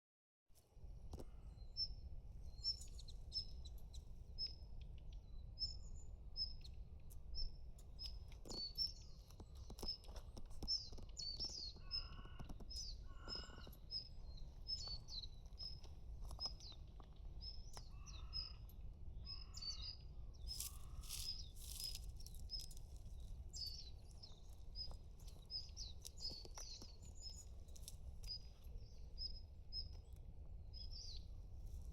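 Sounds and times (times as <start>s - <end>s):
low background hum: 0.6s - 31.9s
small birds chirping: 1.1s - 31.9s
harsh bird calls: 10.7s - 15.8s, 17.7s - 18.7s.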